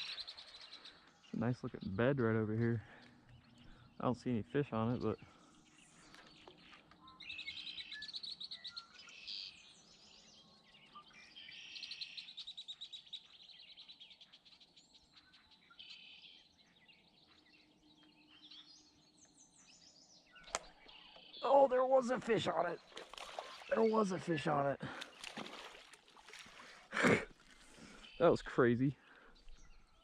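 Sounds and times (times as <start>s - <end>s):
songbirds trilling: 0.0s - 30.0s.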